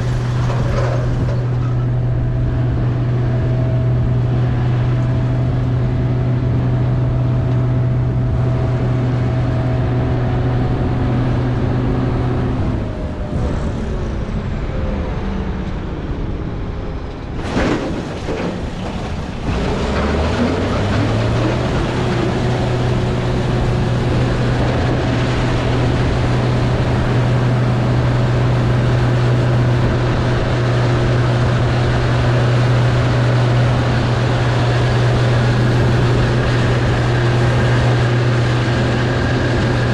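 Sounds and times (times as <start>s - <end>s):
machinery clatter: 0.0s - 9.5s, 16.9s - 39.9s
combine harvester engine running: 0.0s - 39.9s.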